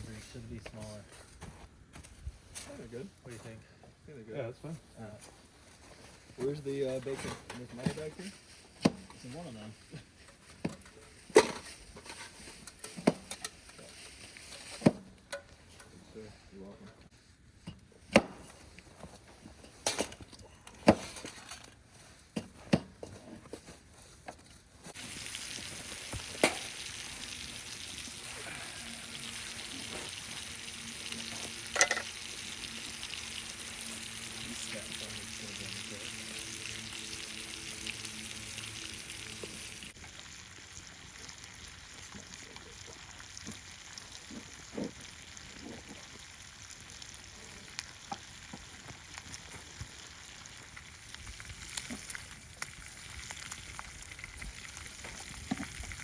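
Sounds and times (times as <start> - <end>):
bacon sizzling in a pan: 25.0 - 56.0.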